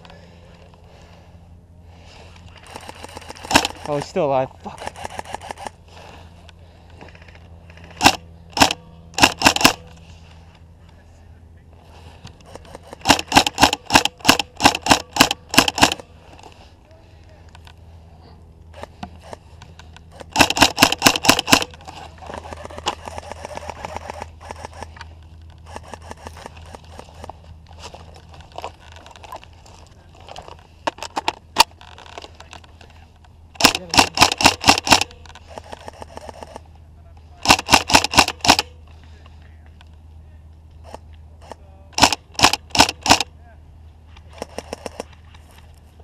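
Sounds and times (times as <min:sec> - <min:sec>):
airsoft gun full-auto bursts: 0:02.6 - 0:05.8, 0:07.9 - 0:09.9, 0:12.4 - 0:16.0, 0:20.1 - 0:25.0, 0:25.6 - 0:27.3, 0:33.6 - 0:36.6, 0:37.4 - 0:38.7, 0:42.0 - 0:43.3
quiet scattered gunshots: 0:11.8 - 0:16.1.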